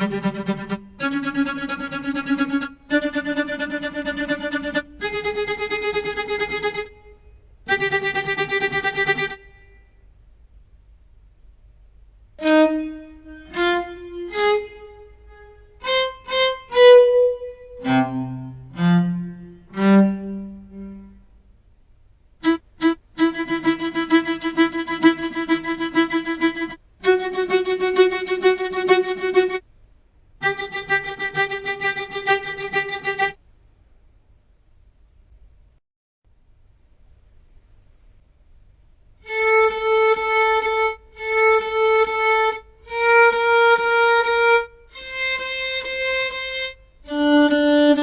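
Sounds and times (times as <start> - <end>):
bowed string instrument notes: 0.0 - 9.9, 12.4 - 21.4, 22.4 - 29.6, 30.4 - 33.4, 39.2 - 48.0.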